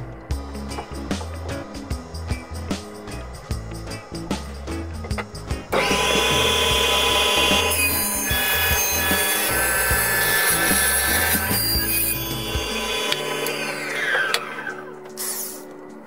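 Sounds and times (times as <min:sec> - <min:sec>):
soft background music: 0:00.0 - 0:16.0
power tool cutting wood: 0:05.7 - 0:15.6.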